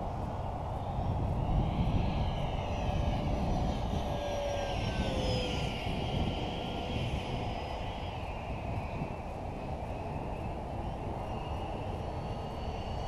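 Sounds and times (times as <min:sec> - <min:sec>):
model jet fan whining past: 0:00.0 - 0:13.0.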